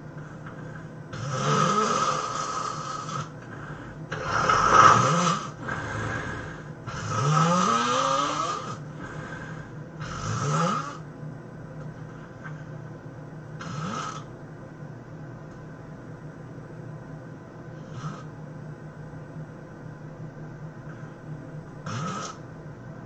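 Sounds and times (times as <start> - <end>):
person snoring heavily: 0.4 - 11.1, 13.6 - 14.3, 17.8 - 18.3, 21.8 - 22.4.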